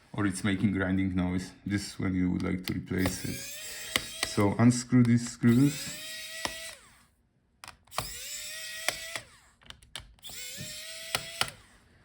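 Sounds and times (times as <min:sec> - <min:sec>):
electric screwdriver motor: 0:03.0 - 0:04.6, 0:05.4 - 0:07.1, 0:07.8 - 0:11.8.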